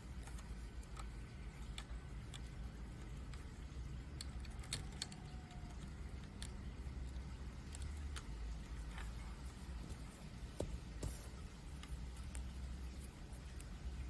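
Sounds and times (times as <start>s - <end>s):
plastic pieces clicking: 4.1s - 8.4s.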